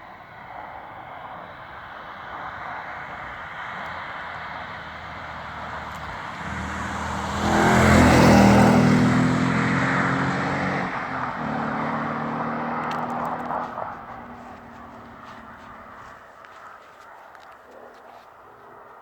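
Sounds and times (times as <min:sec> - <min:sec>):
car engine driving past: 0:04.9 - 0:16.2.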